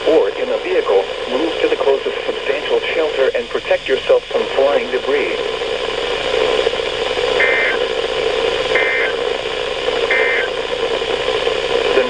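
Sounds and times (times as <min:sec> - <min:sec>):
radio hiss: 0:00.0 - 0:12.0
two-tone digital data bursts: 0:07.4 - 0:07.9, 0:08.7 - 0:09.2, 0:10.1 - 0:10.6.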